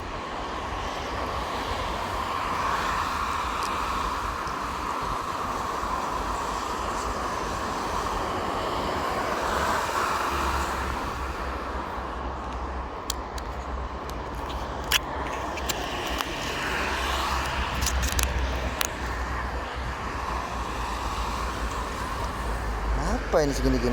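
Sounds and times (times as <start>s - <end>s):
vehicle rumble and hiss: 0.0s - 23.9s
sharp clicks: 12.5s - 19.2s.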